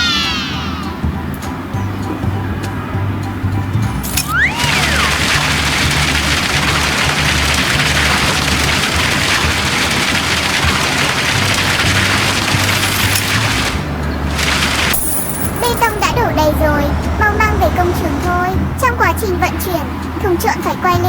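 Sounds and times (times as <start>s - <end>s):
background music: 0.0s - 21.0s
concrete pouring into mixer drum: 4.0s - 16.0s.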